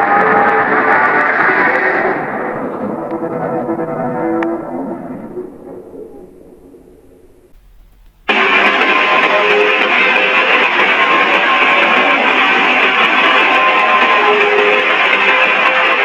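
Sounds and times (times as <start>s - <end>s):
electric guitar: 7.6s - 16.0s.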